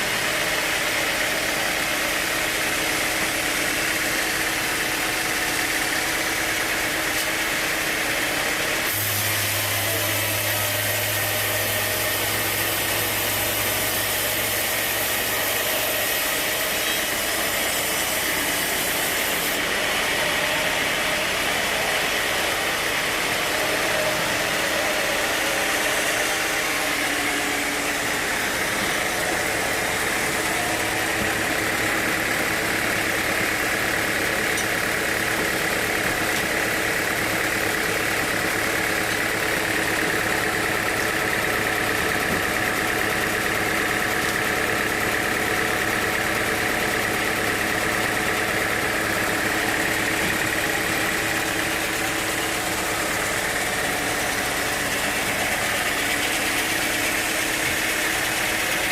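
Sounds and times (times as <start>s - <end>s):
sawmill machinery hum: 0.0s - 58.9s
high machine whine: 6.4s - 42.5s.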